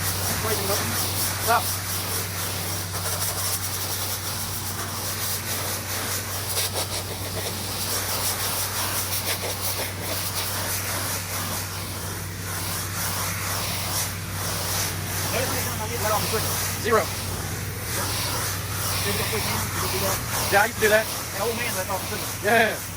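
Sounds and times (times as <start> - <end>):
high-pressure water spraying: 0.0 - 22.9
pressure washer engine running: 0.0 - 22.9.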